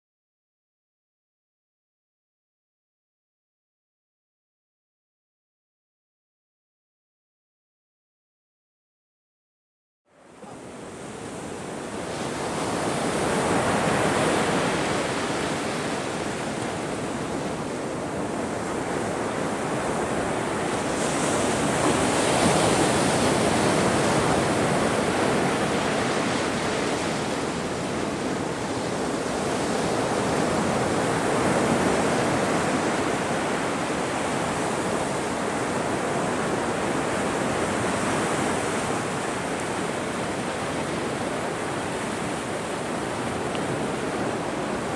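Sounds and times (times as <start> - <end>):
ocean waves washing ashore: 10.1 - 44.9.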